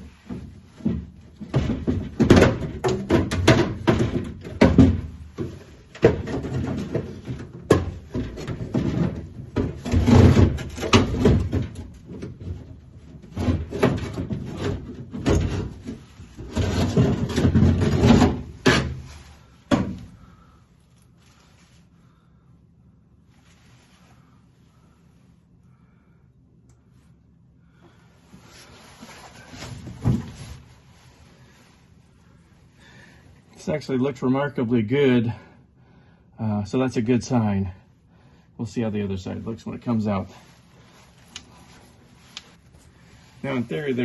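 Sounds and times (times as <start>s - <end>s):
metal clunking and rattling: 0.0s - 20.6s.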